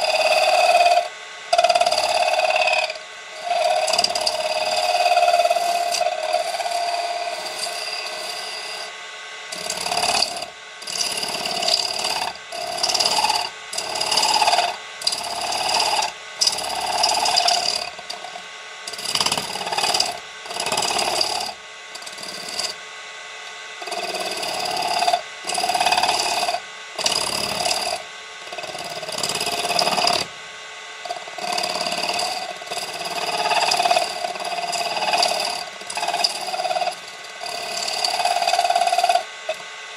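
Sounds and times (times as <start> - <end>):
tool scraping spinning brass: 0.0 - 8.9, 31.1 - 39.6.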